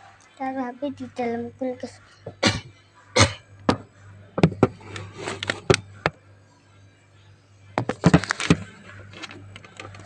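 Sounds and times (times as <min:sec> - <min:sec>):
low steady hum: 0:00.0 - 0:10.0
phone knocks and clicks: 0:03.7 - 0:04.8, 0:07.8 - 0:08.7.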